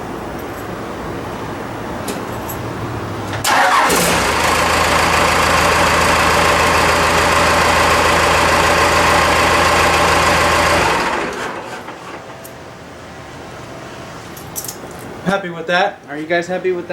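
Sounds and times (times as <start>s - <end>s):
diesel engine starting and idling: 2.9s - 13.0s.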